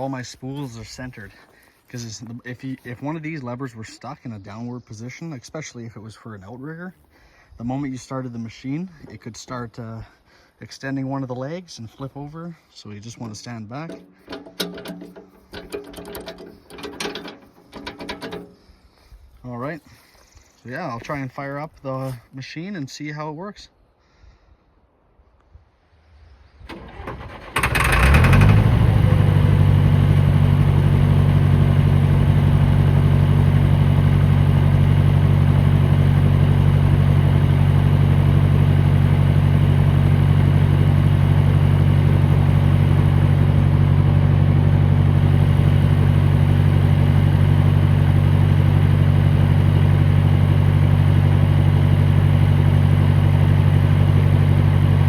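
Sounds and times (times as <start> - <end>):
engine idling: 13.3 - 19.0, 27.5 - 55.0
engine cranking: 13.8 - 18.8, 26.7 - 29.3.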